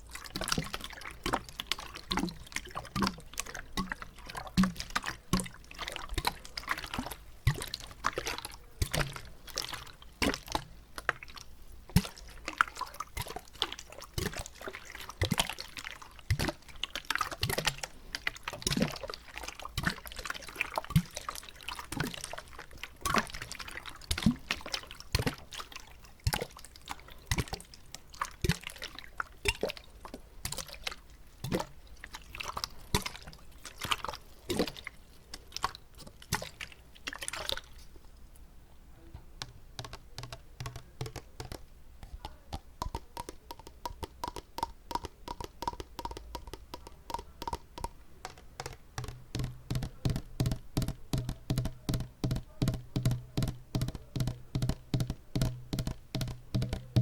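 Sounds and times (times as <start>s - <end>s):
water sloshing in bottle: 0.0s - 38.2s, 39.3s - 57.0s
knocks on water bottle: 42.5s - 57.0s.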